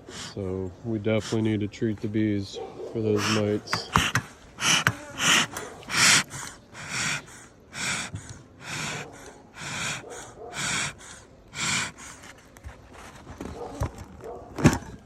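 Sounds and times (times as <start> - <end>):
rhythmic puffs of air: 0.0 - 12.6.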